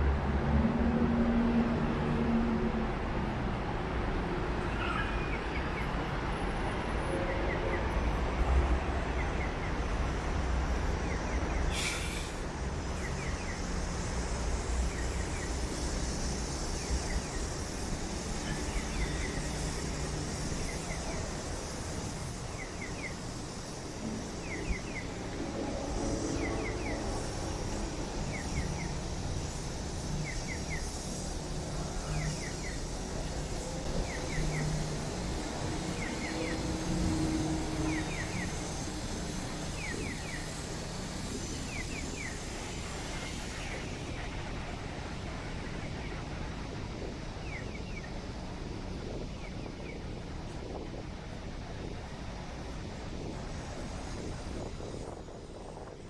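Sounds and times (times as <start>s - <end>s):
traffic rumble: 0.0s - 56.0s
brief hiss: 11.7s - 12.5s.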